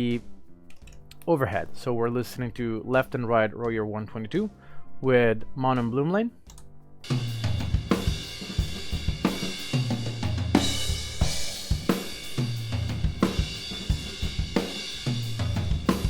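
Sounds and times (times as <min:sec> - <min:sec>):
drum kit playing a groove: 0:06.6 - 0:16.0.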